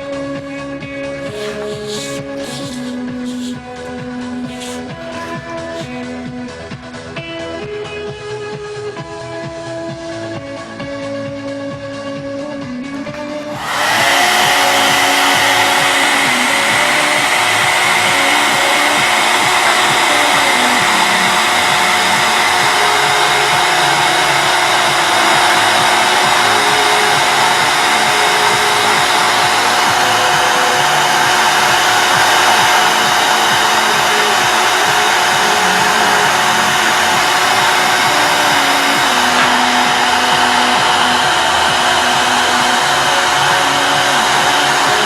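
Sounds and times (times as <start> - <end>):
hot-air blower rushing and whining: 0.8 - 7.1, 12.7 - 45.0.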